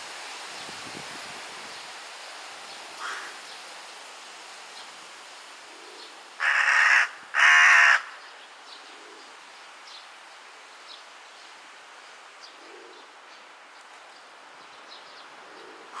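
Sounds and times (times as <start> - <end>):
crow cawing: 3.0 - 3.4, 6.4 - 8.2.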